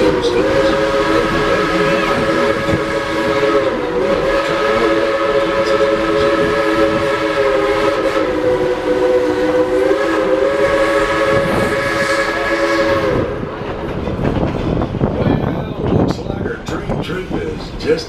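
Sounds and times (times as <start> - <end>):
steam locomotive whistle: 0.0 - 13.6
moving train rumble: 0.0 - 18.0.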